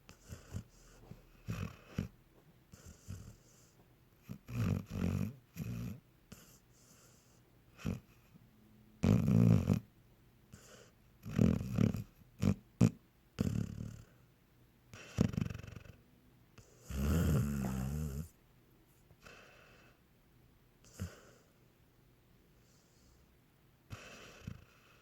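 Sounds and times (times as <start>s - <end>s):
dog snoring: 0.1s - 8.4s, 9.0s - 9.9s, 10.5s - 14.2s, 14.9s - 16.0s, 16.6s - 18.4s, 19.2s - 20.0s, 20.8s - 21.5s, 22.6s - 23.3s, 23.9s - 25.0s.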